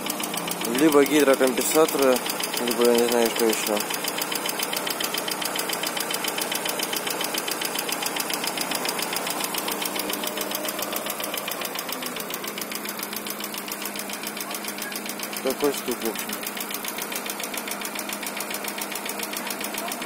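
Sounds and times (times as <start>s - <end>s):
car engine idling with ticking: 0.0s - 20.0s.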